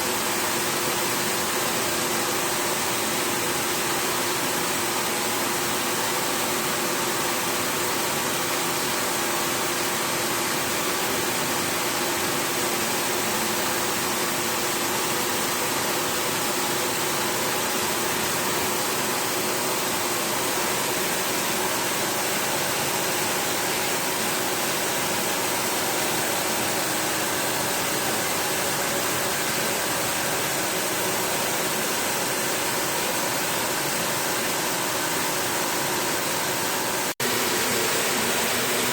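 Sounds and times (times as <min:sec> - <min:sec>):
water jet spraying: 0:37.2 - 0:38.9.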